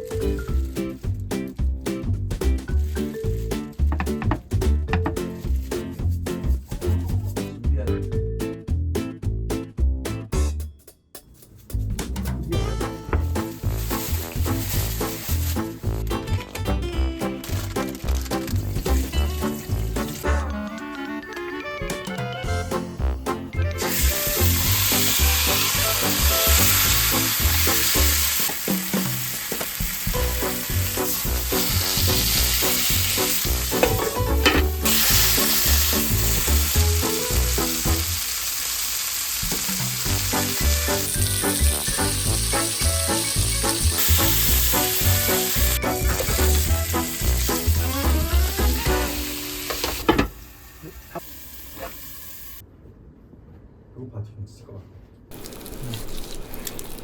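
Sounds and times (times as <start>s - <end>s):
beef sizzling in a hot pan: 13.1s - 16.3s, 17.4s - 20.4s, 23.8s - 52.6s.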